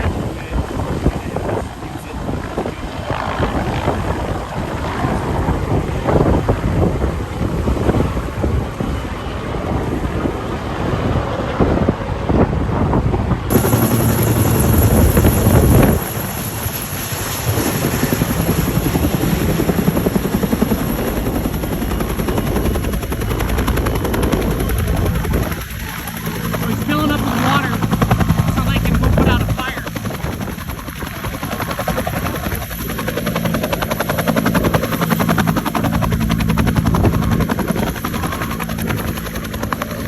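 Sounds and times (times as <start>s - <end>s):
helicopter rotor blades beating: 0.0s - 40.0s
wind buffeting microphone: 0.0s - 40.0s
high steady whine: 21.0s - 30.2s.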